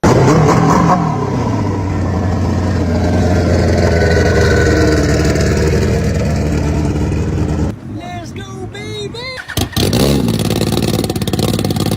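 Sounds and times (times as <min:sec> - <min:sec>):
motorcycle engine running: 0:01.9 - 0:07.7, 0:09.5 - 0:11.9.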